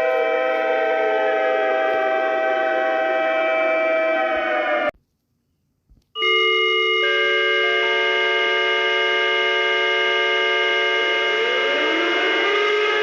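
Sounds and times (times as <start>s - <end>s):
electronic alarm drone: 0.0s - 4.9s, 6.2s - 13.0s
rising tone glide: 11.2s - 13.0s.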